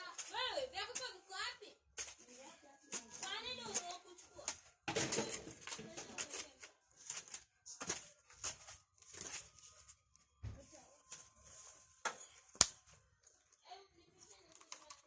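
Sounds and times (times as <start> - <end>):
objects being handled clicks: 14.4 - 15.0.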